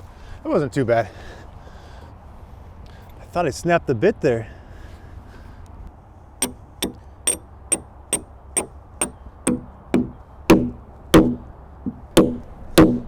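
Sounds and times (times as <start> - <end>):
hammer blows on metal: 6.4 - 7.8, 8.6 - 13.0.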